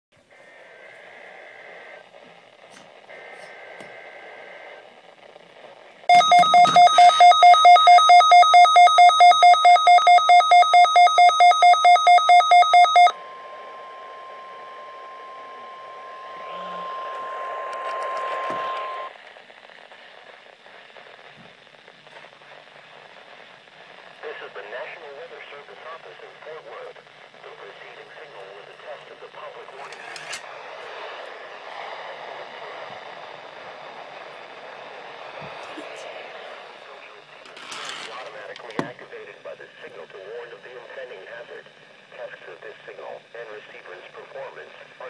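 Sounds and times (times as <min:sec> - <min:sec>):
steady single-pitch tone: 0:06.1 - 0:19.1
pulsing alert tone: 0:12.2 - 0:19.1.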